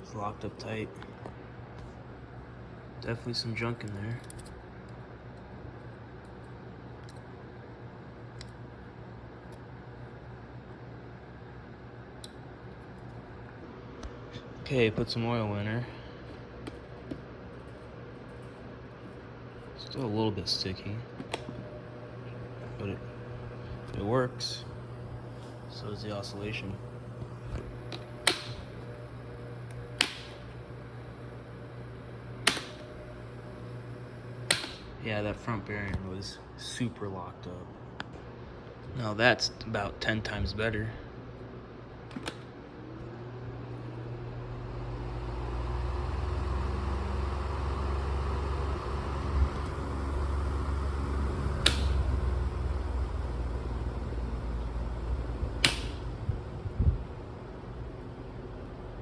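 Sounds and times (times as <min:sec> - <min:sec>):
fan motor humming: 0:00.0 - 0:59.0
sharp clicks: 0:27.9 - 0:28.8, 0:29.7 - 0:30.4, 0:32.4 - 0:32.9, 0:34.4 - 0:34.9, 0:55.6 - 0:56.0.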